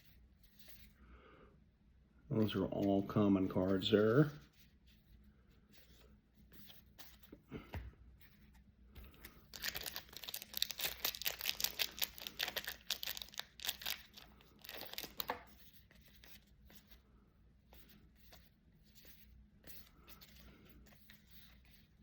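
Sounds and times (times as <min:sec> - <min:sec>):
cards being shuffled: 0:05.8 - 0:16.9
wrapper tearing and crinkling: 0:09.5 - 0:15.3.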